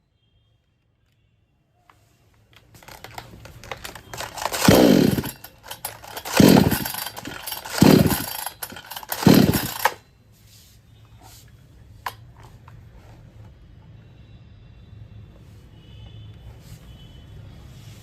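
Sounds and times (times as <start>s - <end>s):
chainsaw engine bursts: 2.9s - 10.0s.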